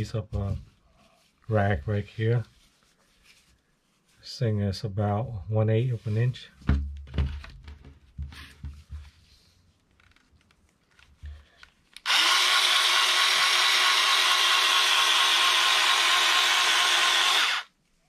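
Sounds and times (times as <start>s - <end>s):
electric scissors motor buzz: 12.0s - 17.7s.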